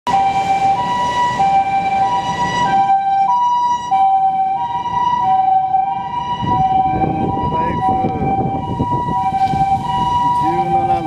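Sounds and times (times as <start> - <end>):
two-tone ambulance siren: 0.1 - 11.0
wind rumble: 0.2 - 11.0.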